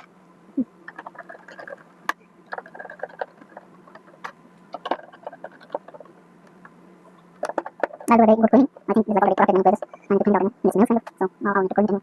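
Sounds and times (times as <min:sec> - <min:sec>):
faint steady hum: 0:00.0 - 0:12.0
plastic parts clicking and rattling: 0:00.9 - 0:06.1, 0:07.4 - 0:08.1.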